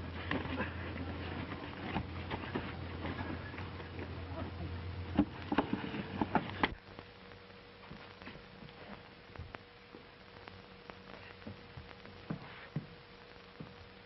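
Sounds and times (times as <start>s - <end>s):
faint hiss: 5.8s - 14.0s.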